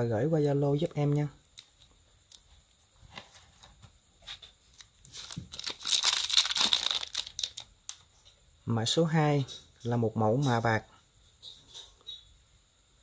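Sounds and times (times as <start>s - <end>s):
crinkling rustle: 0.3s - 8.2s.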